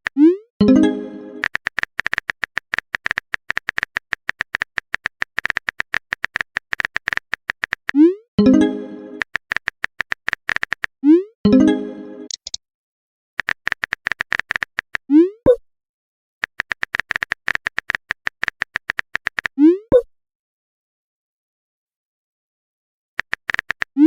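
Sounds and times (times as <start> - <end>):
phone keyboard clicks: 1.4 - 8.0, 9.2 - 10.9, 12.3 - 12.6, 13.4 - 15.0, 16.4 - 19.6, 23.2 - 24.0.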